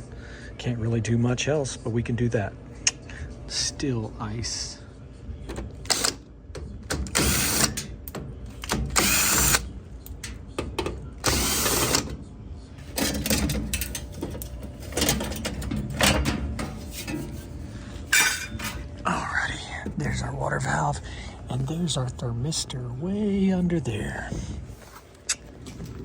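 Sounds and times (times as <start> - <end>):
power drill running in bursts: 7.1 - 7.8, 9.0 - 9.6, 11.2 - 12.1
panel and screws rattling: 12.8 - 19.0.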